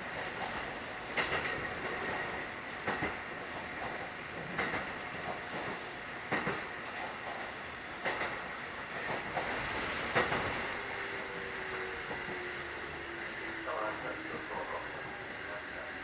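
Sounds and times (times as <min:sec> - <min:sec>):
train rumble: 0:00.0 - 0:16.0
train wheels clicking over rail joints: 0:00.1 - 0:12.5.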